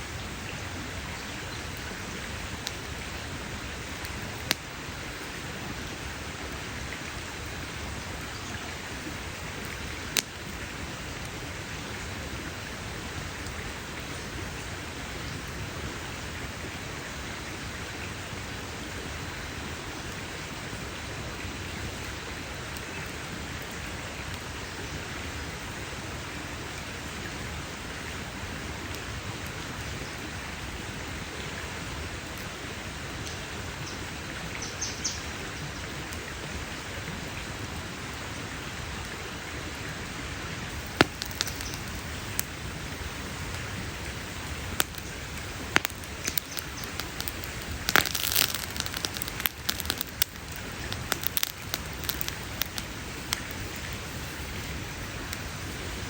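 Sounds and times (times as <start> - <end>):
wood fire crackling: 1.6 - 16.1, 40.7 - 56.0
sharp pops from fire: 4.0 - 4.7, 10.1 - 10.4, 40.7 - 56.0.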